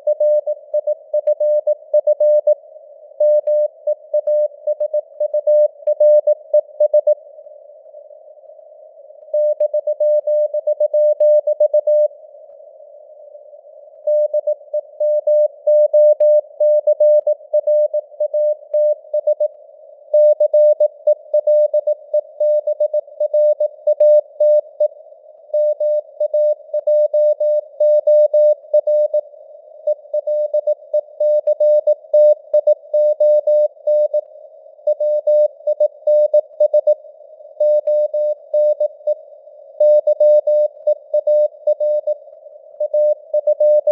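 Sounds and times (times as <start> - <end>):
morse code beeps: 25.6 - 29.2, 29.9 - 34.2, 37.6 - 39.2, 39.8 - 42.2, 42.8 - 43.9.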